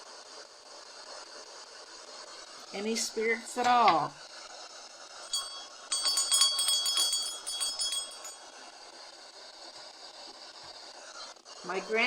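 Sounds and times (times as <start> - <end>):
hand bell ringing: 5.2 - 8.4.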